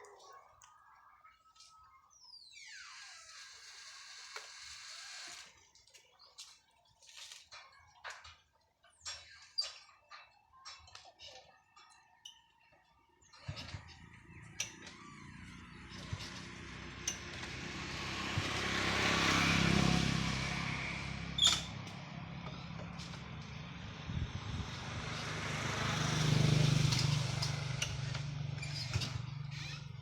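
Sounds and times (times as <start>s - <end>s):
vehicle engine: 13.4s - 30.0s.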